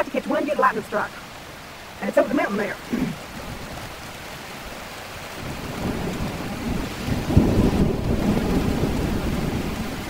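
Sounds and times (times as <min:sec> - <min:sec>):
steady rain falling: 0:00.0 - 0:10.0
thunder rumbling: 0:05.4 - 0:10.0.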